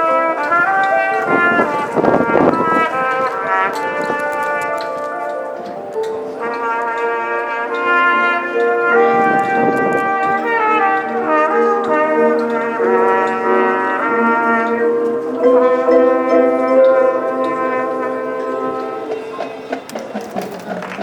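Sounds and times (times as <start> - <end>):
marching band brass chords: 0.0 - 21.0.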